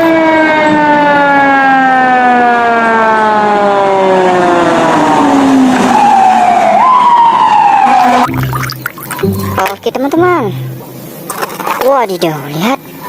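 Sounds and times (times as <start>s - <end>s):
fire engine siren wailing: 0.0s - 8.8s.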